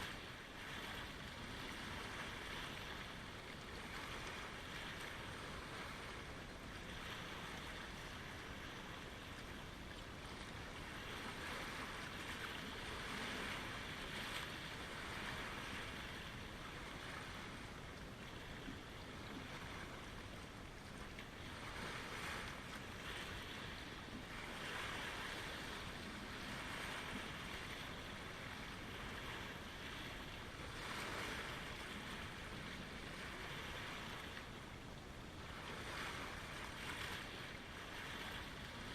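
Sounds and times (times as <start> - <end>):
waves lapping at shoreline: 0.0 - 38.9.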